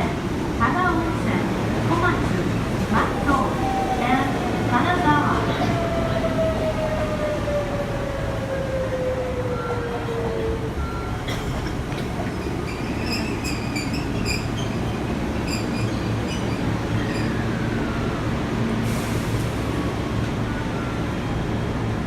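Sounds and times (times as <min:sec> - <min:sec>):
train rumble: 0:00.0 - 0:22.0
train brakes squealing: 0:10.8 - 0:17.6.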